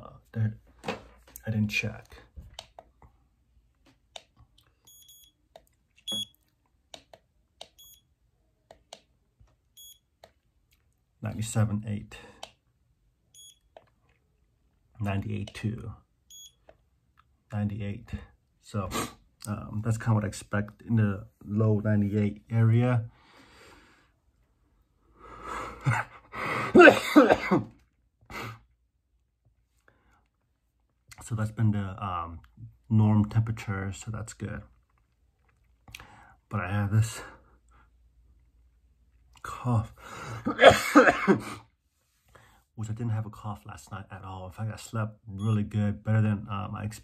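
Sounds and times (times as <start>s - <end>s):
soft clicks: 1.3s - 3.1s, 3.7s - 8.0s, 8.6s - 9.6s, 10.2s - 11.0s
digital thermometer beeping: 4.8s - 5.4s, 6.0s - 6.4s, 7.6s - 8.1s, 9.8s - 10.1s, 13.3s - 13.7s, 16.3s - 16.7s
man coughing harshly: 26.6s - 27.7s, 40.3s - 41.6s.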